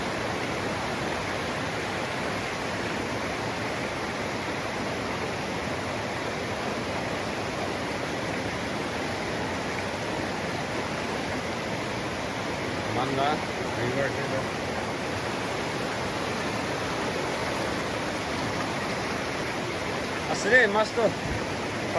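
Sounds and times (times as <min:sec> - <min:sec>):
rushing river water: 0:00.0 - 0:21.9.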